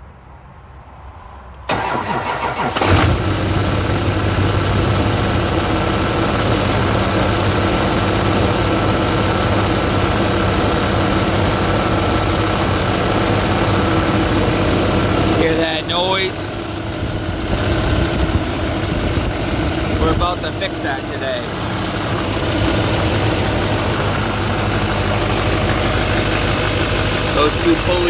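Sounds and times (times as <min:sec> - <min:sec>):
diesel engine idling: 0:01.6 - 0:28.0
diesel engine starter cranking: 0:01.6 - 0:28.0.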